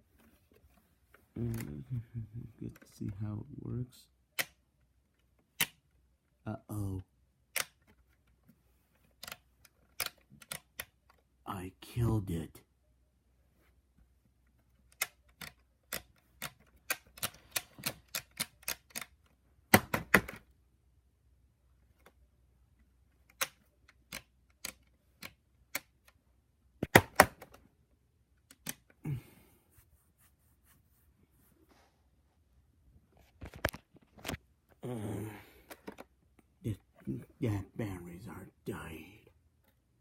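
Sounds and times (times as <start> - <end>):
plastic toy clicking: 4.3 - 4.6, 5.2 - 5.9, 7.5 - 8.1, 9.1 - 11.2, 14.7 - 20.4, 23.2 - 26.2.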